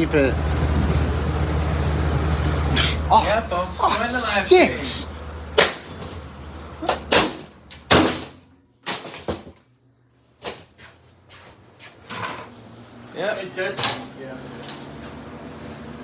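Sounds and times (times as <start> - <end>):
fan motor humming: 0.0 - 7.9.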